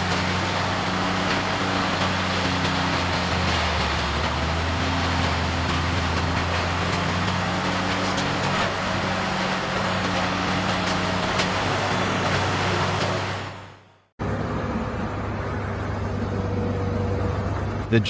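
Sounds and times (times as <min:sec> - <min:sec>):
wood-processing machine running: 0:00.0 - 0:13.6.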